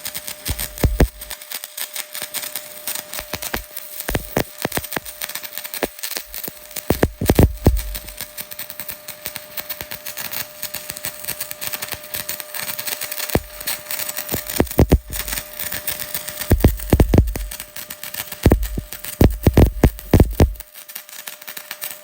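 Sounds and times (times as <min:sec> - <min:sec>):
welding arc crackling: 0:00.0 - 0:22.0
faint steady hum: 0:00.5 - 0:01.3, 0:06.2 - 0:08.2, 0:14.3 - 0:15.6, 0:16.5 - 0:17.6, 0:18.4 - 0:20.6
low thuds: 0:00.8 - 0:01.2, 0:14.6 - 0:15.2, 0:16.5 - 0:17.5, 0:18.5 - 0:20.6.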